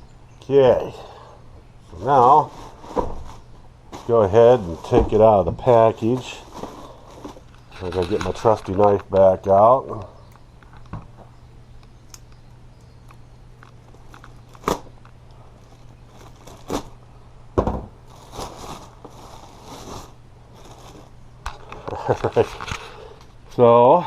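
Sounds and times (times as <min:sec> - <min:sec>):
packaging crinkling and tearing: 0:13.8 - 0:14.9, 0:15.6 - 0:17.0, 0:18.1 - 0:22.9.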